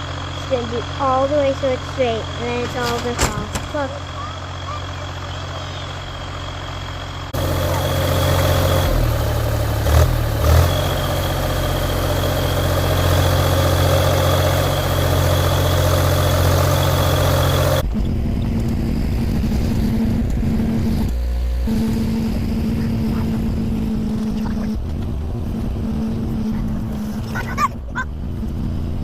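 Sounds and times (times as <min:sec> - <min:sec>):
boom lift engine running: 0:00.0 - 0:29.0
high whine: 0:02.0 - 0:29.0
thumps: 0:02.6 - 0:04.0.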